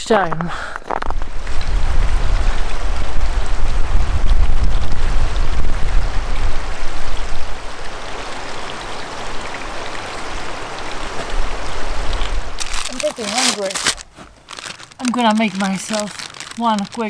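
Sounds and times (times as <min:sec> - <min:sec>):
wind buffeting microphone: 0:00.5 - 0:08.6.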